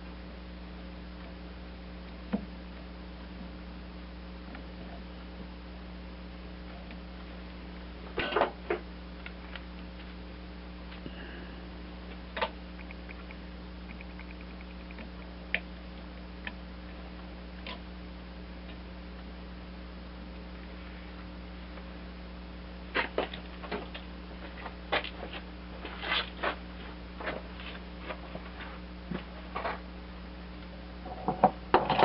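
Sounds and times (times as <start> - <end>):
steady electrical hum: 0.0 - 32.0.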